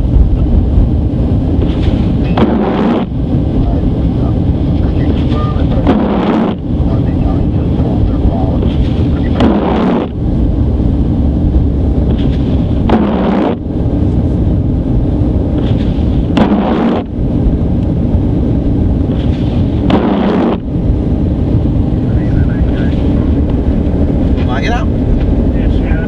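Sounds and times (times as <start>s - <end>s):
car engine and tyres rumbling: 0.0s - 26.0s
windshield wipers swishing: 1.5s - 14.4s.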